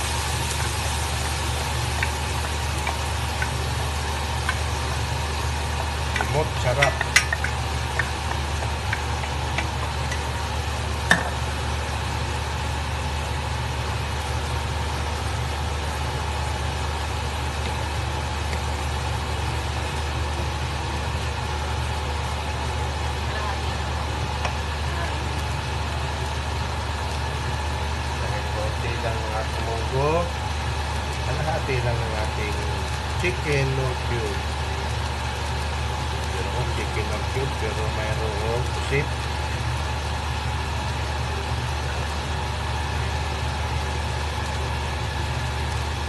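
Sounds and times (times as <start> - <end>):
beans stirred in frying pan: 0.0 - 23.3.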